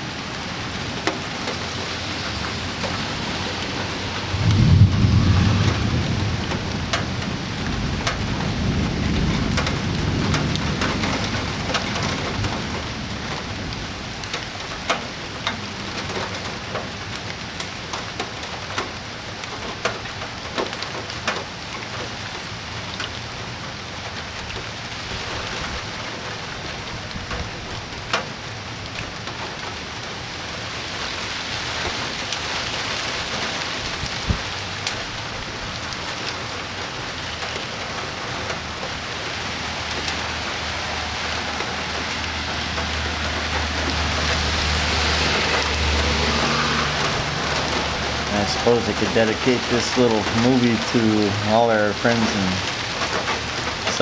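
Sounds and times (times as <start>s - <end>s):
thunder rumbling: 0.0s - 18.8s, 31.2s - 54.0s
rain falling: 0.0s - 54.0s.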